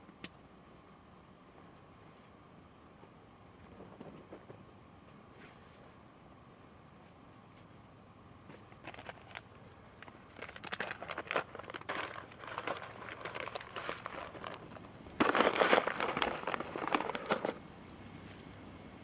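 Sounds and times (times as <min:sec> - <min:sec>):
crinkling and rustling: 0:08.4 - 0:18.7.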